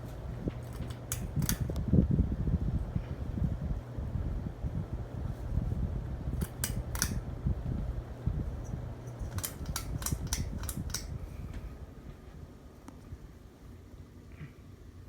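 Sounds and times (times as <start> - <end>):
ceiling fan humming: 0.0 - 15.0
sharp clicks: 0.7 - 1.8, 6.4 - 7.2, 9.1 - 11.1.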